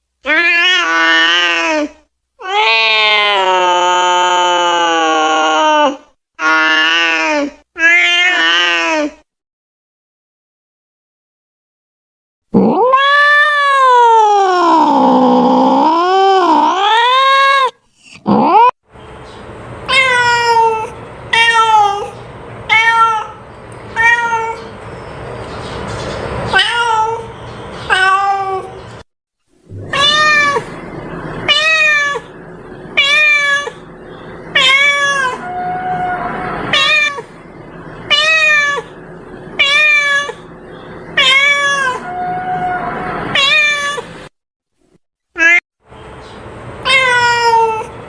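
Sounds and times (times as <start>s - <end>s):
cat meowing: 0.3s - 1.7s, 2.4s - 7.2s, 7.8s - 9.1s, 12.6s - 15.8s, 19.9s - 24.7s, 26.5s - 27.3s, 27.9s - 28.8s, 29.7s - 30.8s, 31.4s - 32.4s, 33.0s - 33.9s, 34.5s - 37.3s, 38.1s - 39.0s, 39.6s - 40.5s, 41.1s - 44.1s, 45.4s - 45.6s, 46.8s - 48.0s.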